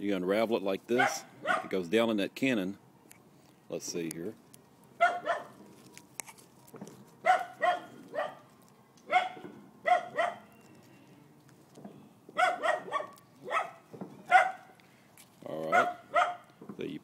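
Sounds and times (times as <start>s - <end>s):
dog barking: 1.0s - 1.8s, 5.0s - 5.6s, 7.2s - 8.5s, 9.1s - 10.5s, 12.4s - 14.7s, 15.7s - 16.5s.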